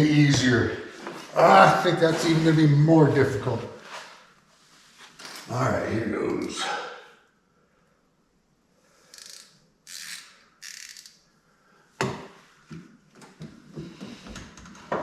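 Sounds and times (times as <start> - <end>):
hand tools scraping: 0.4 - 2.8.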